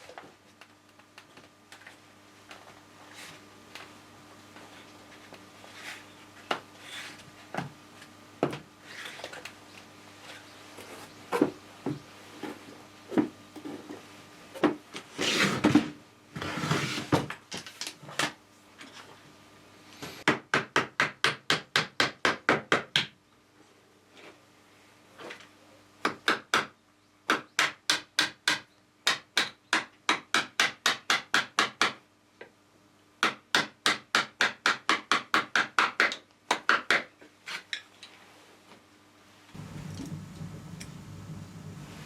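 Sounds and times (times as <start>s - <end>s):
rubbing or scraping: 15.1s - 17.3s.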